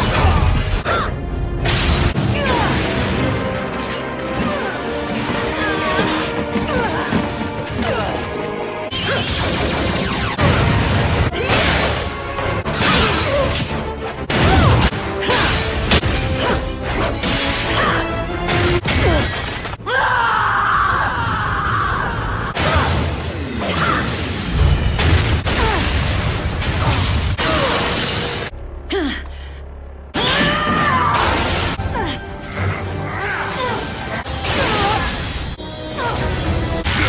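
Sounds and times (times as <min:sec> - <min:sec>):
dramatic action music: 0:00.0 - 0:37.0
woman grunting and crying out: 0:28.9 - 0:29.6, 0:30.2 - 0:35.2.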